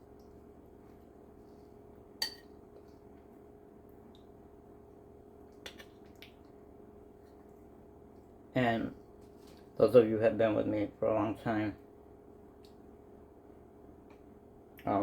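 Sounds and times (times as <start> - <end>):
low room hum: 0.0 - 15.0
spoon clinking against dish: 2.2 - 2.5.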